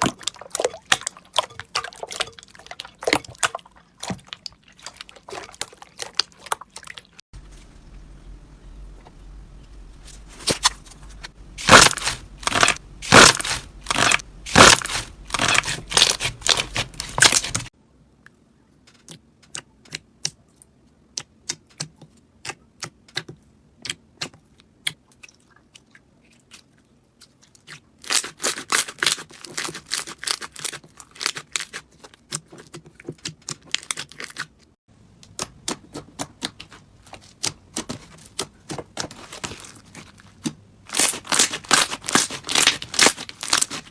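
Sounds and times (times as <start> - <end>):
slime crackling and popping: 11.6 - 17.7, 40.9 - 43.9.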